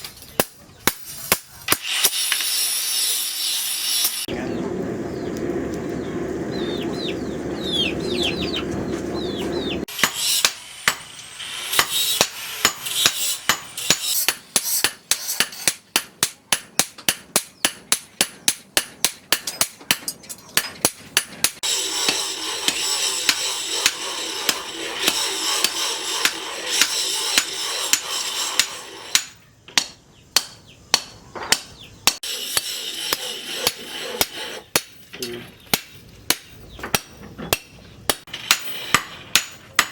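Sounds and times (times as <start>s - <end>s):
hammer striking steel on anvil: 9.9s - 35.1s, 35.7s - 39.9s
steady hissing noise: 21.6s - 29.3s.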